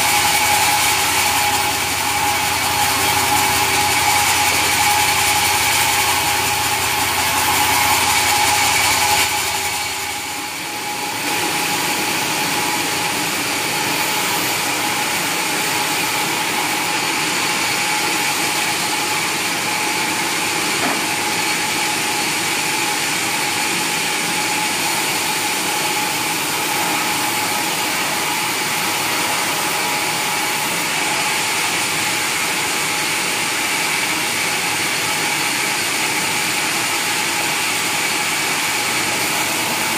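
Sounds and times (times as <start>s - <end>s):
high mechanical whine: 0.0s - 39.9s
sawmill machinery running: 0.0s - 39.9s.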